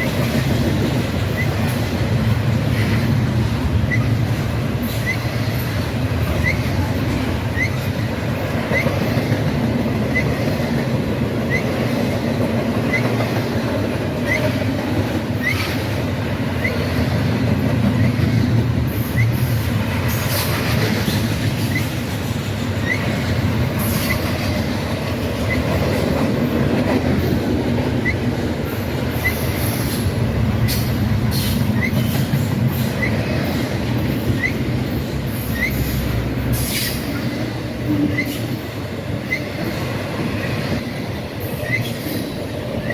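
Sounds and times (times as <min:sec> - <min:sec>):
freight train rumbling on rails: 0:00.0 - 0:42.9
wheel squeals: 0:04.8 - 0:05.6, 0:06.4 - 0:06.9, 0:19.0 - 0:22.1, 0:22.8 - 0:24.5, 0:25.4 - 0:25.8, 0:29.1 - 0:33.5, 0:35.4 - 0:36.0, 0:37.9 - 0:38.6, 0:41.5 - 0:42.9.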